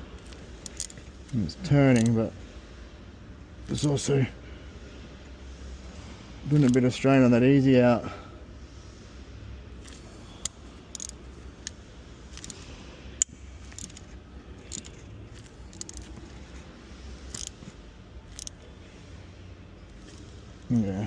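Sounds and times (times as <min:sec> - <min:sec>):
metallic clicks and scrapes of tools: 0:00.1 - 0:02.3, 0:06.4 - 0:07.1, 0:09.8 - 0:18.9, 0:19.8 - 0:21.0.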